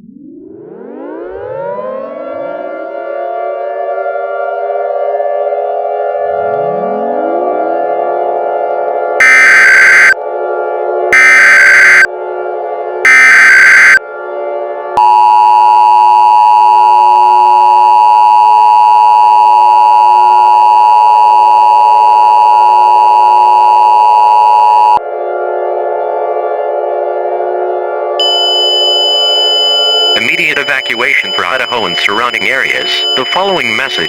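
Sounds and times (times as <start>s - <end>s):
high tone: 9.2s - 10.2s, 11.2s - 12.1s, 13.1s - 14.0s, 28.2s - 34.0s
screeching data burst: 9.2s - 10.2s, 11.2s - 12.1s, 13.1s - 14.0s, 28.2s - 34.0s
two-tone alert signal: 9.2s - 10.2s, 11.2s - 12.1s, 13.1s - 14.0s, 28.2s - 34.0s.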